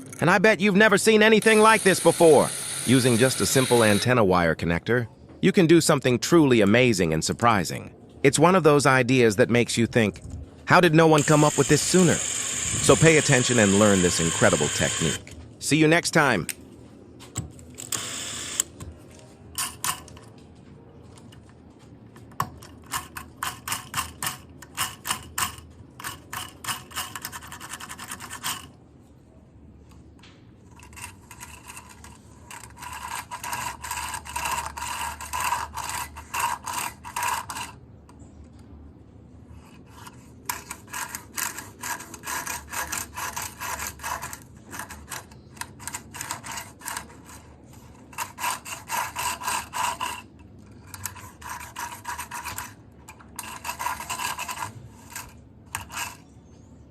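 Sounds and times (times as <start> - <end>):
hand tool rasping: 1.4 - 4.1, 11.1 - 15.2, 30.8 - 37.8, 39.9 - 52.8, 53.4 - 56.2.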